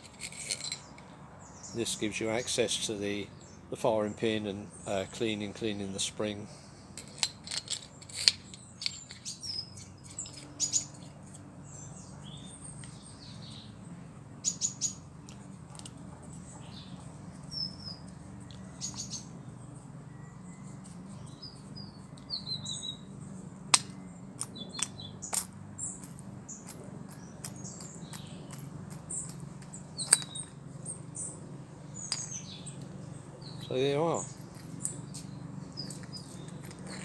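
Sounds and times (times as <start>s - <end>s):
high bird chirps: 8.5s - 13.8s, 14.4s - 15.1s, 20.1s - 23.2s.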